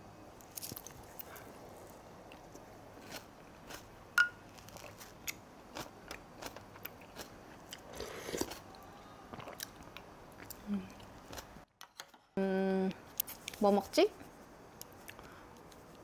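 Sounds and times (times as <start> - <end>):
chewing and crunching: 4.5 - 8.7.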